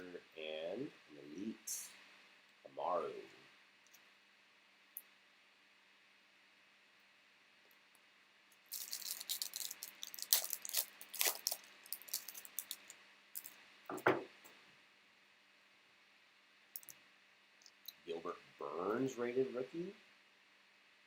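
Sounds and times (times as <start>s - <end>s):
foil wrapper tearing and crinkling: 8.7s - 13.5s
soft thump: 13.9s - 14.4s.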